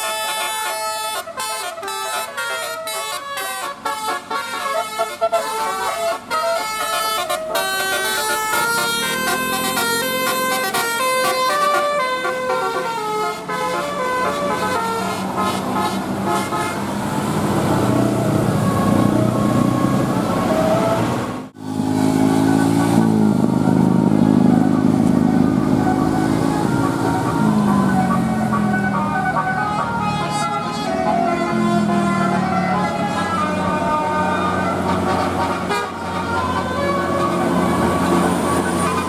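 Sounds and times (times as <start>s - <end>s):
bus horn playing melody: 0.0s - 39.0s
road vehicles running: 0.0s - 39.0s
low engine drone: 14.8s - 39.0s.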